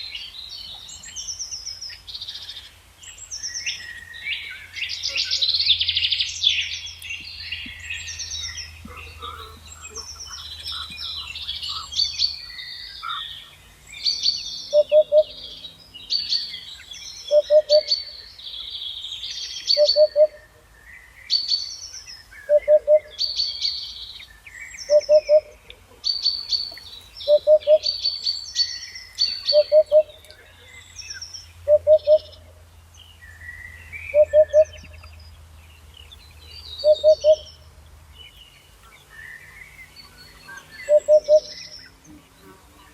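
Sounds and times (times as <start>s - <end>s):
songbirds singing: 0.0s - 42.9s.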